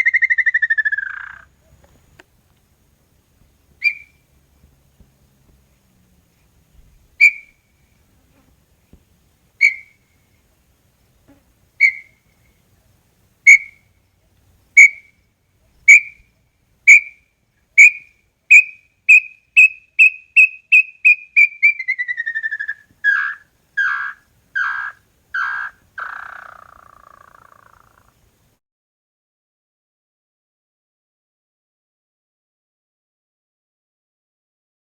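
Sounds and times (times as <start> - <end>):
bird whistling song: 0.0 - 2.2, 3.8 - 4.2, 7.2 - 7.7, 9.6 - 10.1, 11.8 - 12.6, 13.4 - 13.9, 14.7 - 16.3, 16.9 - 17.2, 17.8 - 28.1.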